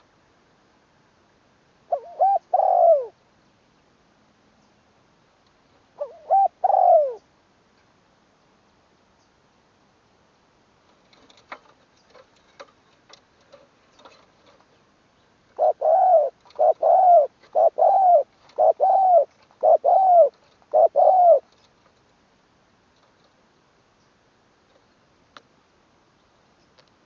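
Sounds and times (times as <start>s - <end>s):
dove cooing: 1.9s - 3.2s, 6.0s - 7.3s, 15.5s - 21.6s
faint clicks: 24.0s - 25.5s, 26.6s - 27.0s.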